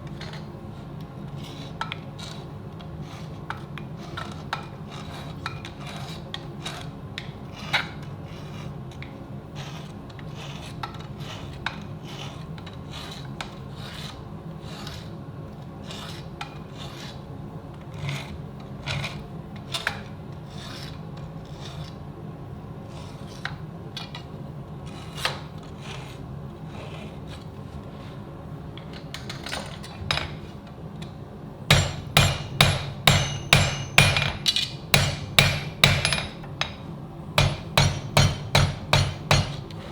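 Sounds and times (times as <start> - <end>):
steady low hum: 30.1 - 39.9
hammer ringing on anvil: 31.7 - 39.7
hand tools scraping steel: 31.7 - 39.9.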